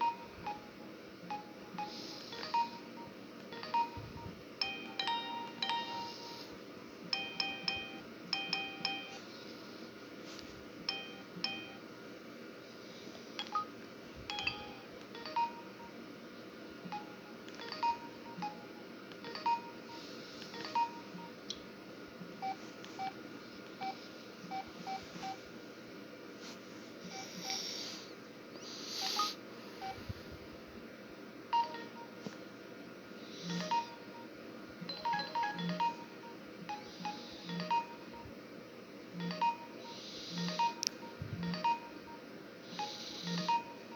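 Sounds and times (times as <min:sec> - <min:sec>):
mobile phone ringtone: 0:00.0 - 0:06.5, 0:07.1 - 0:09.2, 0:10.9 - 0:11.9, 0:14.3 - 0:16.0, 0:16.9 - 0:21.4, 0:29.0 - 0:30.0, 0:31.6 - 0:32.2, 0:33.4 - 0:38.4, 0:39.2 - 0:43.9.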